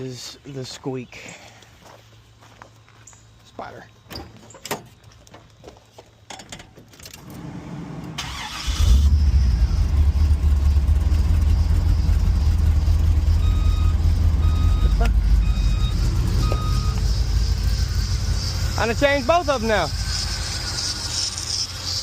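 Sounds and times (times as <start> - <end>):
car engine cranking and idling: 6.9 - 20.3.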